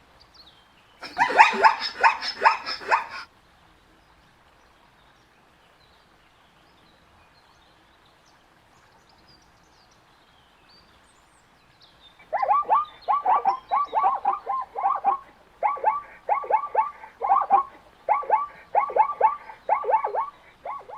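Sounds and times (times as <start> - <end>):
faint bird chirps: 1.0 - 3.2, 12.2 - 20.9
zebra barking calls: 1.0 - 3.3, 12.2 - 20.9.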